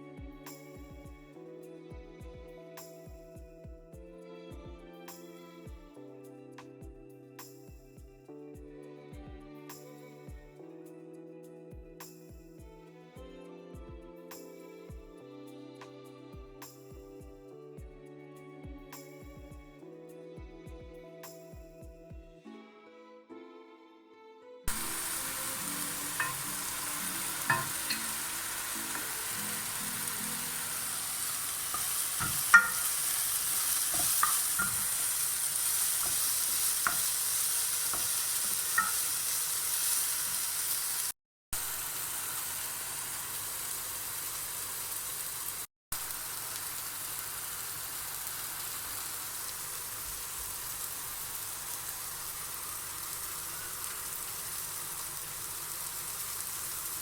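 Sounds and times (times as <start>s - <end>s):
food sizzling in a pan: 24.7s - 57.0s
utensil clicking and tapping: 31.7s - 33.0s.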